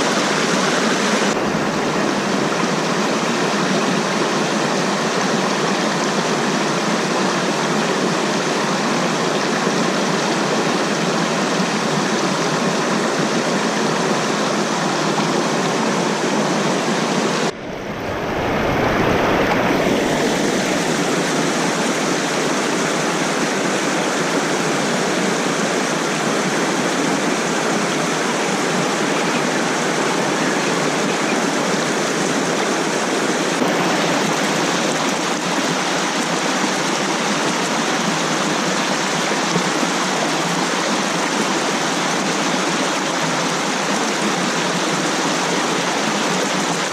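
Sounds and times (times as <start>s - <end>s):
rushing stream and waterfall: 0.0s - 46.9s
muffled low rumble: 17.5s - 21.4s.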